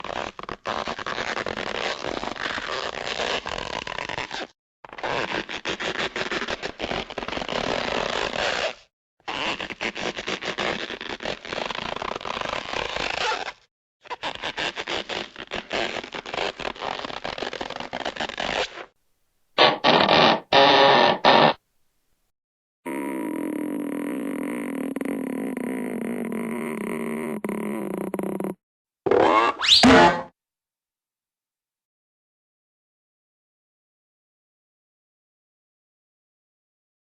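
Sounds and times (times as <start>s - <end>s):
cartoon rubbery stretching creaks: 0.0s - 19.0s, 19.6s - 21.6s, 22.9s - 30.3s.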